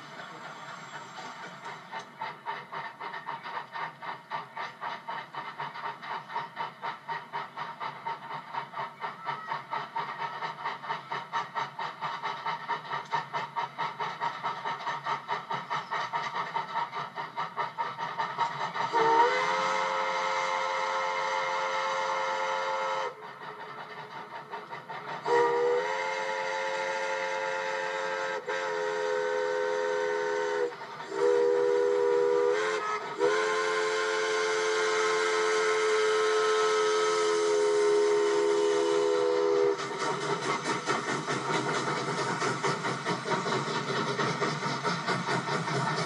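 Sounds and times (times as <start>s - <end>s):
locomotive exhaust chuffs: 0.0s - 46.0s
steam locomotive chime whistle: 18.9s - 23.2s, 25.2s - 39.9s.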